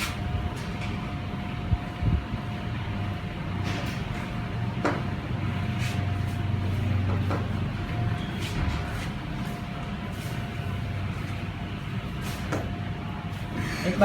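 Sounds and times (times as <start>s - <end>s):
low rumble of background noise: 0.0s - 14.0s.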